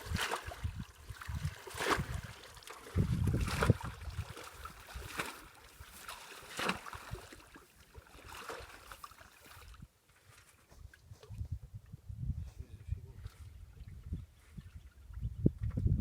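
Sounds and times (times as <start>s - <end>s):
water sloshing and splashing: 0.0s - 10.5s.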